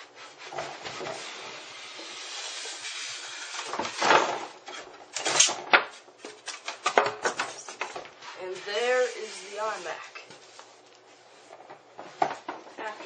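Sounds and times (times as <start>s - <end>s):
packaging scraping and sliding: 0.3s - 11.7s
knocks and rustles: 11.5s - 13.0s.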